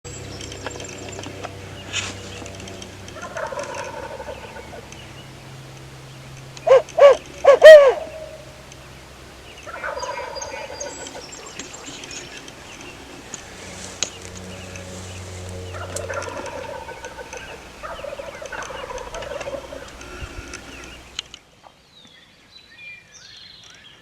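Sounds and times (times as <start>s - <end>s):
turkey sharp calls: 0.2s - 21.3s
turkey gobbling: 3.2s - 5.0s, 6.6s - 8.9s, 9.6s - 14.4s, 15.4s - 21.2s.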